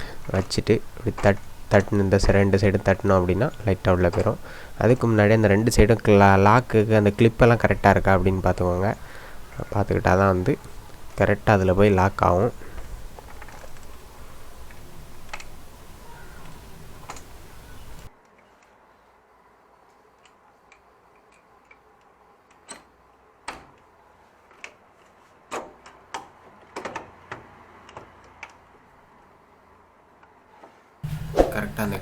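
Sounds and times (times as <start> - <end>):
steady hiss: 0.0 - 18.1, 31.0 - 32.0.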